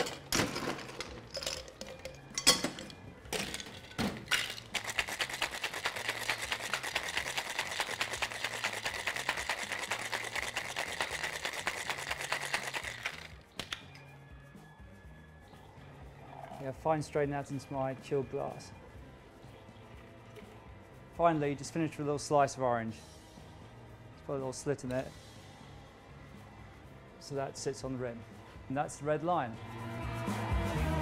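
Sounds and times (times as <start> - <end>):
ice rattling in shaken tin: 0.0 - 2.2, 3.5 - 13.4
ice clinking into shaker: 0.0 - 13.4.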